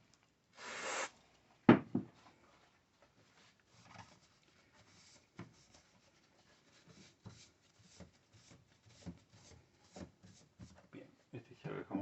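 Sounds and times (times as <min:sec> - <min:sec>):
hands rubbing hardware parts: 0:03.1 - 0:10.8.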